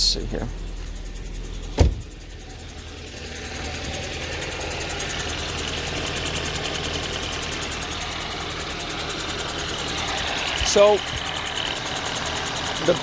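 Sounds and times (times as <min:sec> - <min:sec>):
car engine idling: 0:00.0 - 0:13.0
fast even engine ticking: 0:00.0 - 0:13.0
sharp thud: 0:01.7 - 0:02.2.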